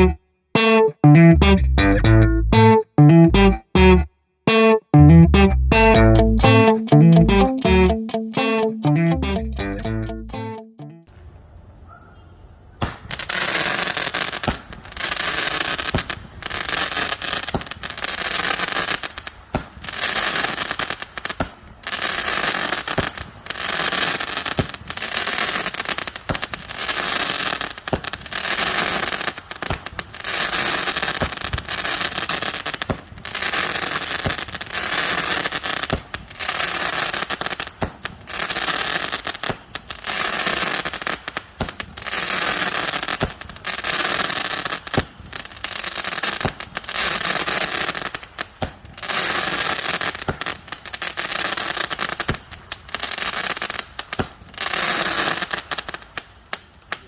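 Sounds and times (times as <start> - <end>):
firework shots banging and crackling: 12.8 - 36.8, 37.6 - 51.3, 52.0 - 56.1.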